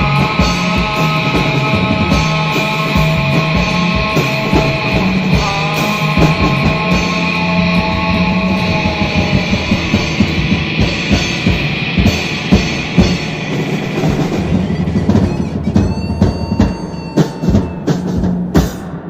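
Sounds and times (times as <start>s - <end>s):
distorted electric guitar: 0.0s - 19.0s
rock drums: 0.0s - 19.0s.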